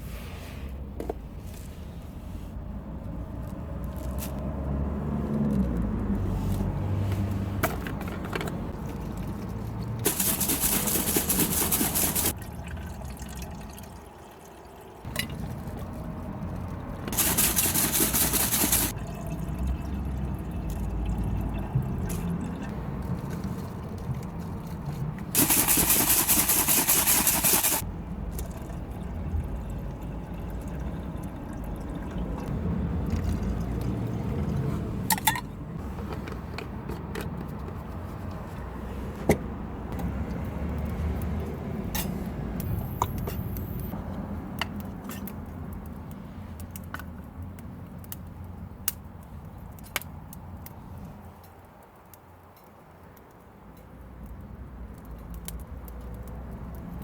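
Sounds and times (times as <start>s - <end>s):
liquid pouring: 8.8s - 22.8s, 25.4s - 34.4s.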